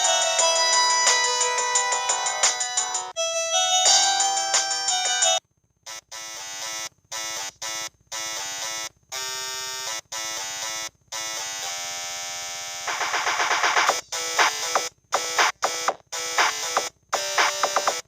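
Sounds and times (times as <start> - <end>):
polyphonic phone ringtone: 0.0 - 5.4.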